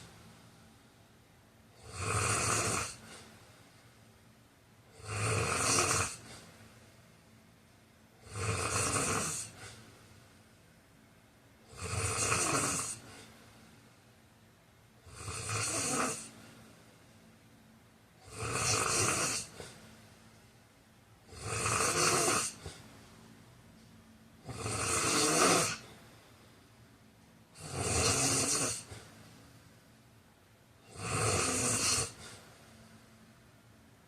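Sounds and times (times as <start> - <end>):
man snoring: 1.8 - 3.2, 4.9 - 6.4, 8.2 - 9.7, 11.7 - 13.3, 15.0 - 16.4, 18.2 - 19.7, 21.3 - 22.8, 24.4 - 25.9, 27.6 - 29.0, 30.8 - 32.4.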